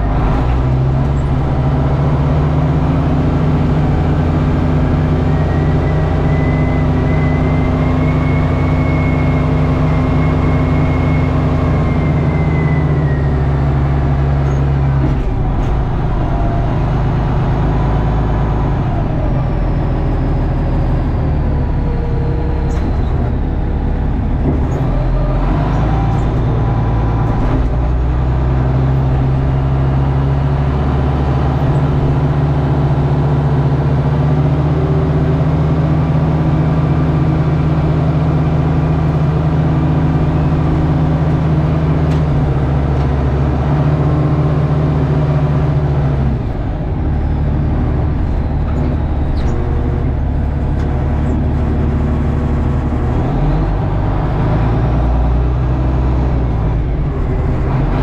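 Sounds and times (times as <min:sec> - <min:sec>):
loader engine running under load: 0:00.0 - 0:58.0.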